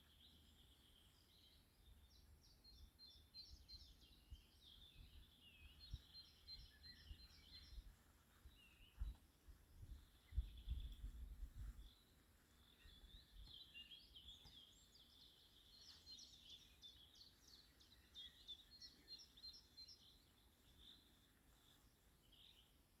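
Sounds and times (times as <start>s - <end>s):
small birds chirping and trilling: 0.0s - 23.0s.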